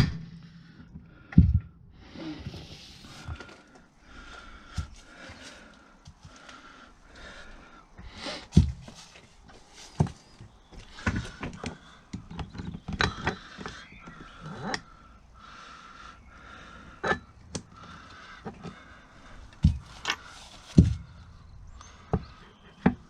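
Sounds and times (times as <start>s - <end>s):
tools and metal parts knocking: 11.0s - 14.8s.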